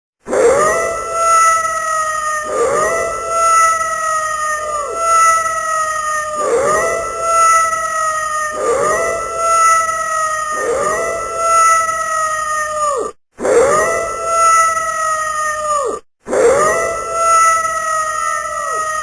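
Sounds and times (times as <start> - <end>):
wolf howling: 0.3 - 19.0.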